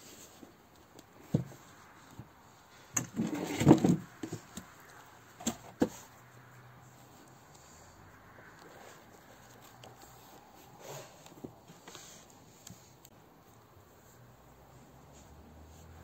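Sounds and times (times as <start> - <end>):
objects clattering: 2.9 - 4.6.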